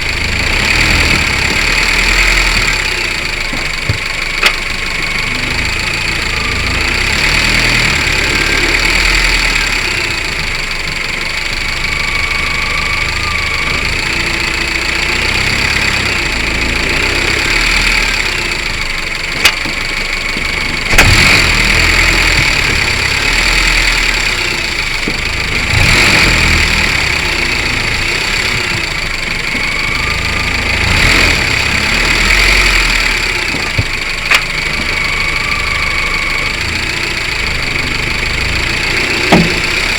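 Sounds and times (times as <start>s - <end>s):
car engine running: 0.0s - 39.9s
sharp knocks from wheel area: 2.4s - 4.8s, 19.4s - 23.2s, 33.5s - 34.8s, 39.1s - 39.9s.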